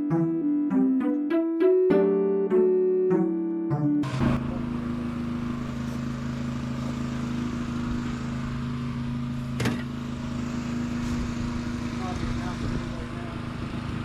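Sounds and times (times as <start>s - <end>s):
motor running steadily: 4.0s - 14.0s.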